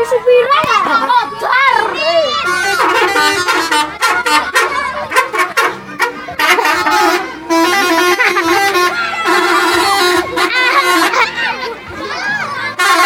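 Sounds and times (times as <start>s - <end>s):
multi-tone air horn tune: 2.4s - 11.4s, 12.7s - 13.0s.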